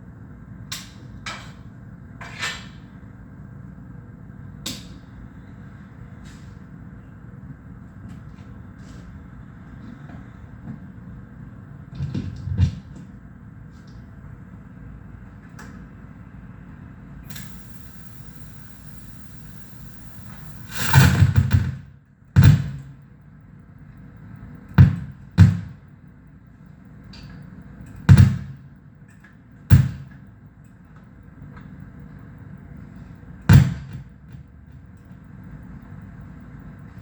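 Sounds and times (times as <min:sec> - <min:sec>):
steady low hum: 0:02.9 - 0:37.0
high hiss: 0:17.3 - 0:21.1.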